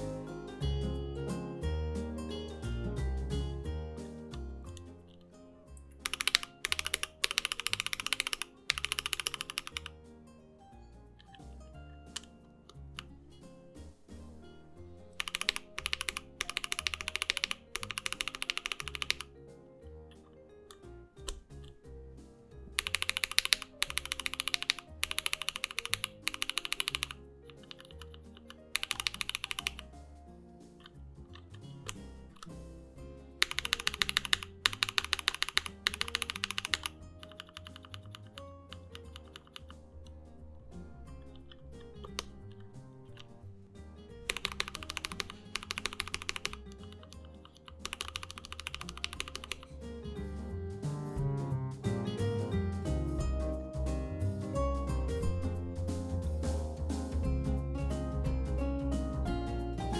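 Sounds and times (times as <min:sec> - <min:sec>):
background music: 0:00.0 - 0:59.9
mechanical keyboard clacking: 0:06.0 - 0:10.0, 0:15.2 - 0:19.3, 0:22.8 - 0:29.9, 0:33.4 - 0:38.4, 0:44.3 - 0:49.7.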